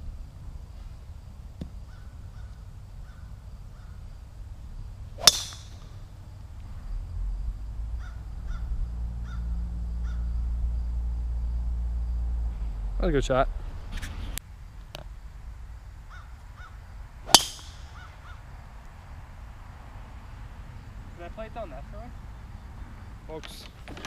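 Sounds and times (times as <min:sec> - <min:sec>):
low rumble: 0:04.1 - 0:16.0
golf club striking ball: 0:05.2 - 0:06.0, 0:17.3 - 0:18.1
bird calling: 0:08.0 - 0:10.3, 0:16.1 - 0:18.5.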